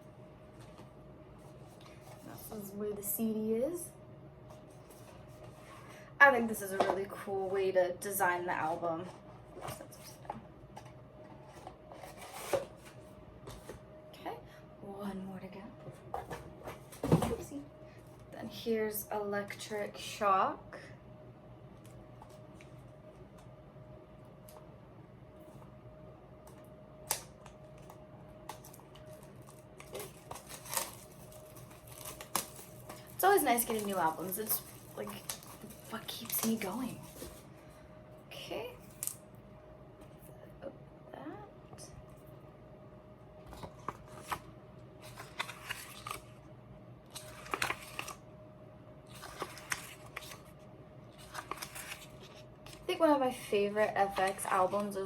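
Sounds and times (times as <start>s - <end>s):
packaging rustling: 27.1s - 37.5s, 43.5s - 46.4s, 47.1s - 48.2s, 49.0s - 52.9s, 54.0s - 55.0s.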